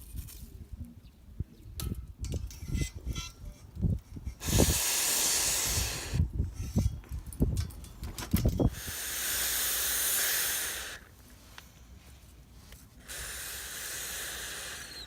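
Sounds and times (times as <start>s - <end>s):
loud hissing burst: 4.4s - 6.3s, 8.6s - 11.1s, 13.0s - 15.0s.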